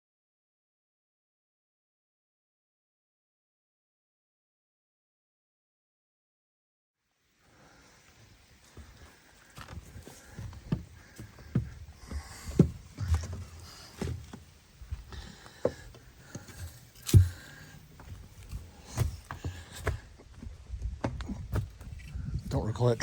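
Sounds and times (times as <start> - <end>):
footsteps on woodland trail: 7.5 - 22.9.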